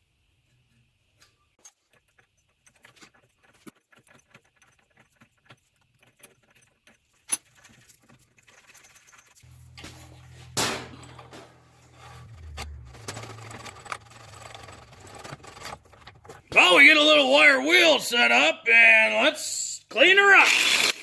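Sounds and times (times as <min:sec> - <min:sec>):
clatter: 0:01.6 - 0:16.4
electric motor hum: 0:09.5 - 0:15.6.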